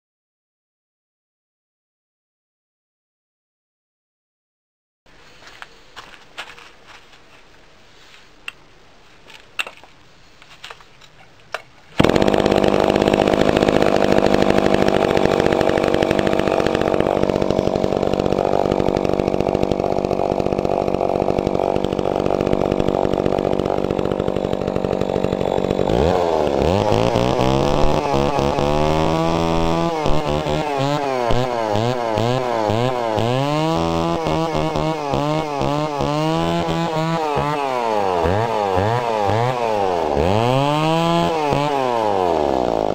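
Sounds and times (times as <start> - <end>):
chainsaw starter clicks: 11.6 - 32.3
chainsaw running and revving: 12.0 - 42.9.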